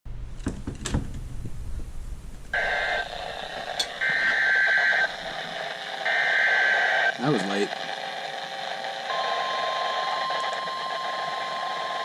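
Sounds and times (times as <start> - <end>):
buzzy digital data tones: 2.6 - 12.0
clicks: 2.6 - 12.0.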